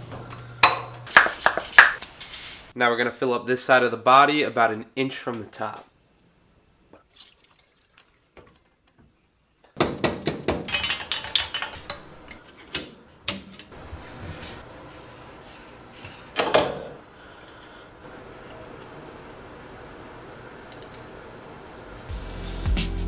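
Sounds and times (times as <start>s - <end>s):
metal parts clicking and clattering: 10.2s - 13.8s.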